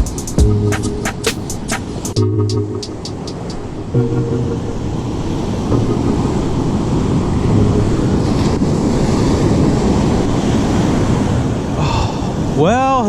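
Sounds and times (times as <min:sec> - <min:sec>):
ocean surf breaking: 0:00.1 - 0:12.4.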